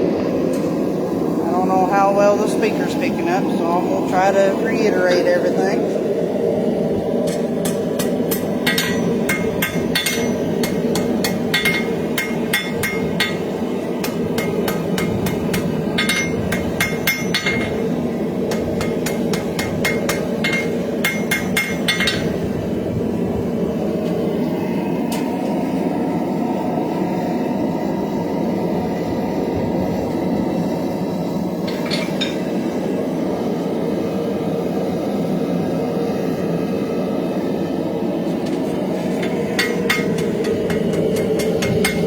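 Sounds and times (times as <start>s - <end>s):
steady low rumble: 0.0s - 42.0s
hammer ringing on steel blade: 8.3s - 13.4s, 16.0s - 17.8s.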